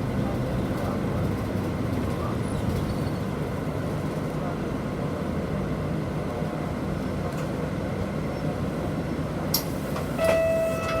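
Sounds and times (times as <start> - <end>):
bus engine and road rumble: 0.0 - 11.0.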